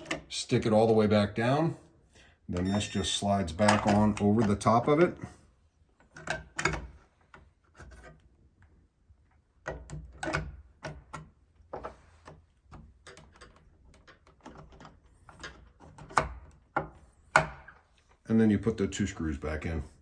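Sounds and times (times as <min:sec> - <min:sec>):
lock cover clicks and knocks: 0:00.0 - 0:00.3, 0:03.6 - 0:04.7, 0:06.0 - 0:08.2, 0:09.6 - 0:17.9.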